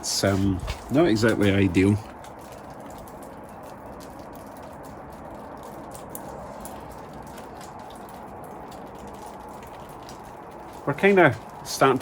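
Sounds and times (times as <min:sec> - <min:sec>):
outdoor background noise: 0:00.0 - 0:12.0.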